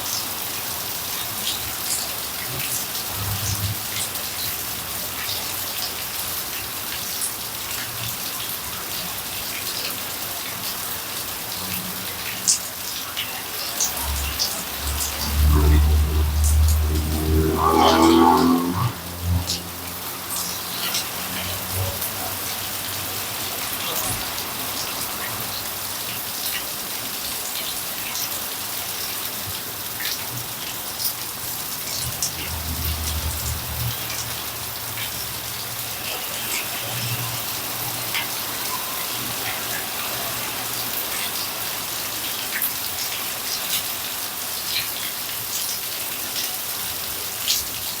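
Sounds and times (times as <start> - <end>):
heavy rain falling: 0.0 - 48.0
faint low rumble: 13.9 - 21.1.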